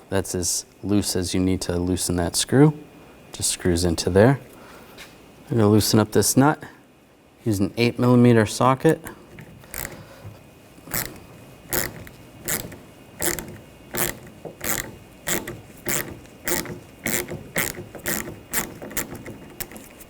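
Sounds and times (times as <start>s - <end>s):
socket ratchet clicking: 9.6s - 10.0s, 10.9s - 20.0s.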